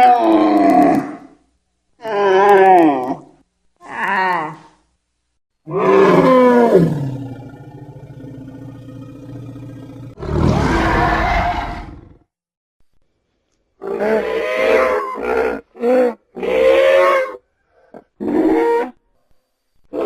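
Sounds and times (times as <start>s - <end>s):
animal roar: 5.7s - 12.2s, 13.8s - 17.4s.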